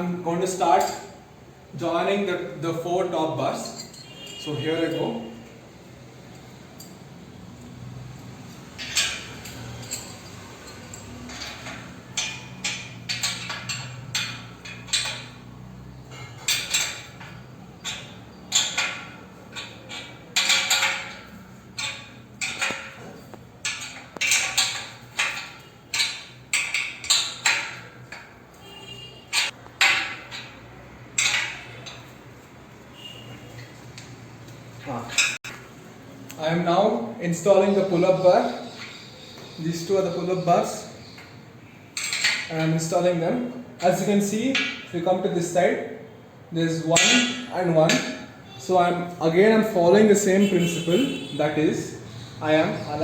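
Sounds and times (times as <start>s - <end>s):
metal tubes clanking: 2.8s - 5.0s, 7.6s - 33.7s, 34.8s - 35.6s, 36.8s - 45.6s, 46.7s - 53.0s.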